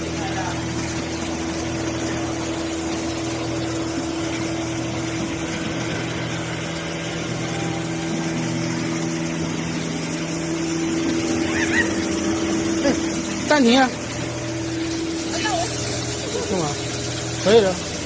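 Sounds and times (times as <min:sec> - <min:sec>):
wood router machine hum: 0:00.0 - 0:18.0.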